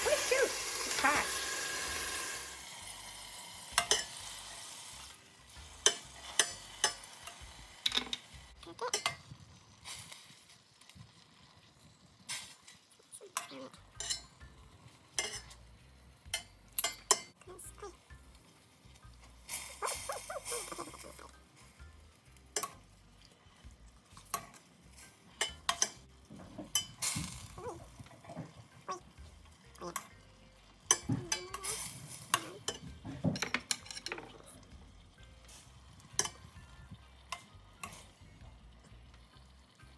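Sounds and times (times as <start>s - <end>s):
metal utensil scraping a pan: 0.7s - 10.6s, 12.3s - 17.4s, 22.5s - 23.0s, 24.2s - 36.6s, 37.2s - 38.2s
utensil scraping a pan: 0.8s - 8.3s.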